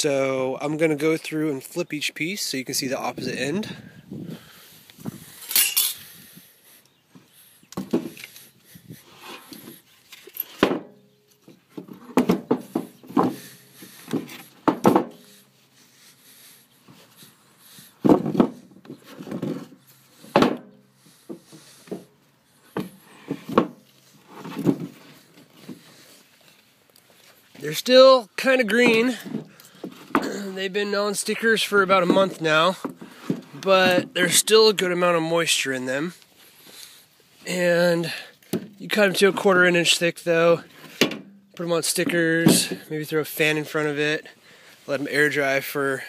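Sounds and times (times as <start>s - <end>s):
wood knocking against wood: 14.1s - 15.2s.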